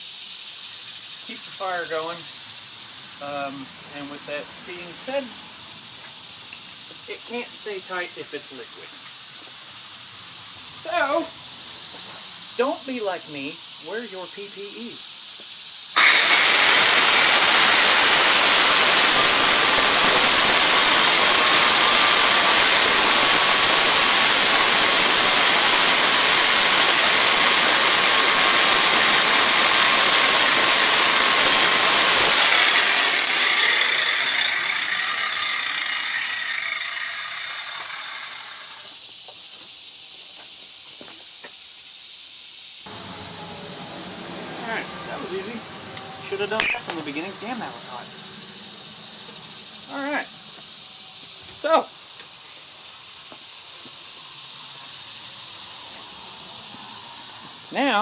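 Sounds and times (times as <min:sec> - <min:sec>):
angle grinder cutting steel: 0:16.0 - 0:38.9, 0:42.9 - 0:50.3
grinder disc winding down whine: 0:16.0 - 0:38.9, 0:42.9 - 0:50.0.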